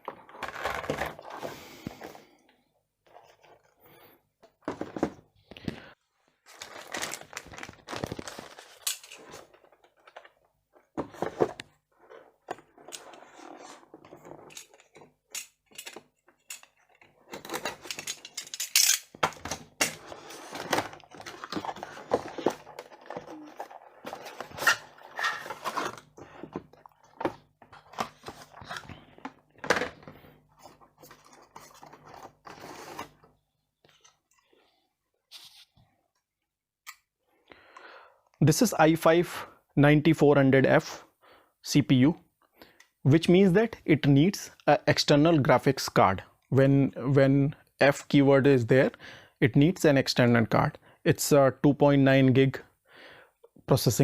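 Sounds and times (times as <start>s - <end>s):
cardboard and plastic packaging handled: 3.0s - 18.4s, 19.1s - 34.3s, 35.3s - 35.8s.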